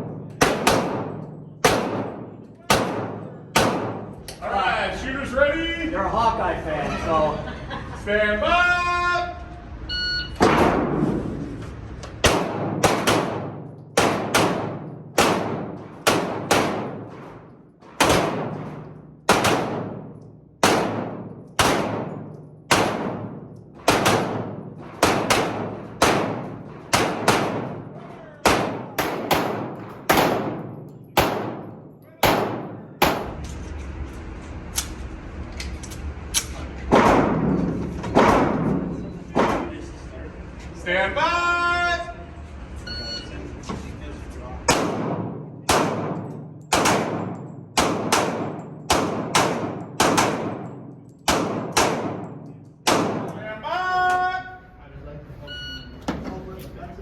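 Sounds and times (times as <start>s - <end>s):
rapid pistol fire with echo: 0.0s - 4.3s, 12.2s - 33.4s, 44.7s - 53.4s
shot timer beep: 9.9s - 10.4s.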